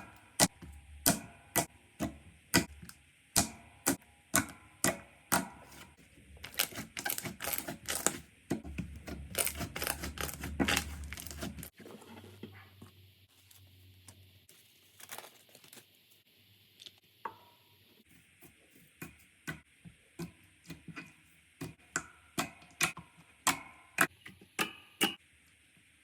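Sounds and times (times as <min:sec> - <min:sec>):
faint slime crackles: 0:06.4 - 0:08.2, 0:09.3 - 0:11.8, 0:13.3 - 0:16.2.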